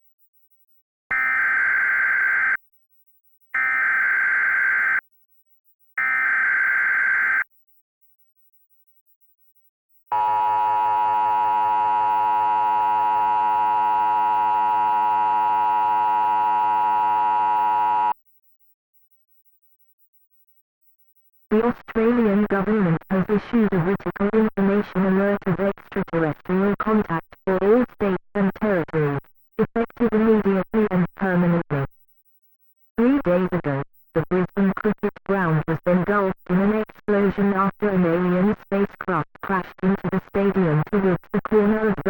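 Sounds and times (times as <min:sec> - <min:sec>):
two-tone alarm: 0:01.1 - 0:02.6, 0:03.6 - 0:05.0, 0:06.0 - 0:07.5, 0:10.1 - 0:18.2
data tone bursts: 0:06.0 - 0:07.4, 0:10.1 - 0:18.2.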